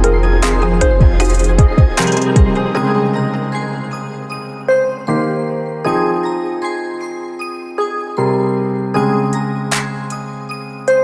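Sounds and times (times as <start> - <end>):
held music chords: 0.0 - 6.8.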